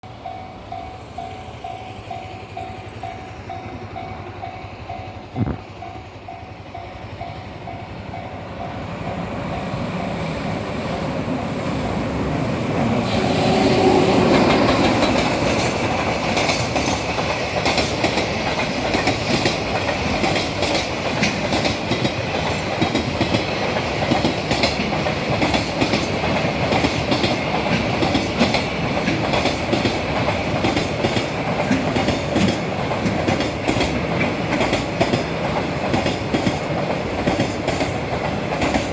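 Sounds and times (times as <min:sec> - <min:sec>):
freight train passing: 0:00.0 - 0:38.9
wheels clattering over rail joints: 0:11.8 - 0:38.9.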